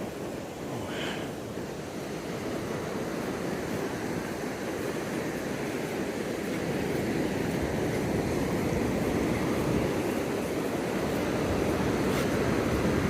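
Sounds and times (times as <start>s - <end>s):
surf breaking on beach: 0.0s - 13.0s
wind on microphone: 0.0s - 13.0s.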